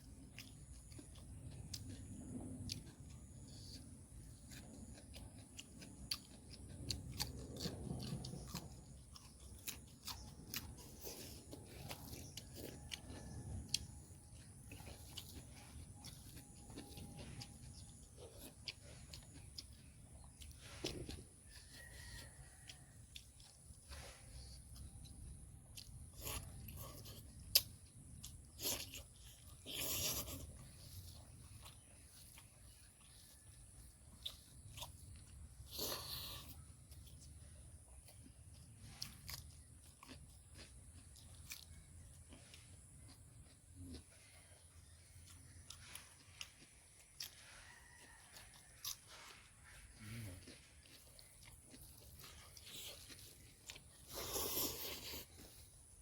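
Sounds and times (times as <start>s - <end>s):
person chewing crunchy food: 0.0s - 56.0s.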